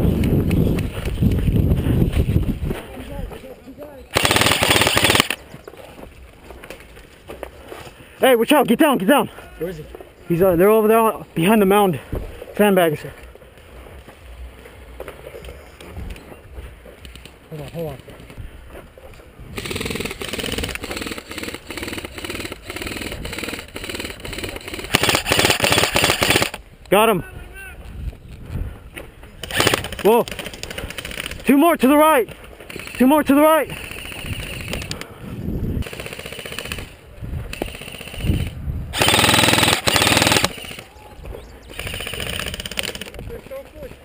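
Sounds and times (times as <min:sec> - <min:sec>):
airsoft rifle firing full-auto: 0:04.1 - 0:05.4, 0:19.6 - 0:26.6, 0:29.4 - 0:31.4, 0:35.8 - 0:36.9, 0:37.5 - 0:40.8, 0:41.7 - 0:43.2.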